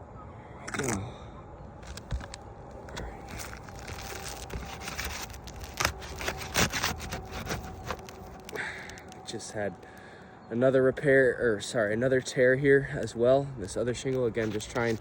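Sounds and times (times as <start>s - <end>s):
shingle tearing with sharp cracks: 1.8s - 10.1s, 13.6s - 15.0s
shingles crackling and scraping: 1.8s - 10.2s, 13.6s - 15.0s.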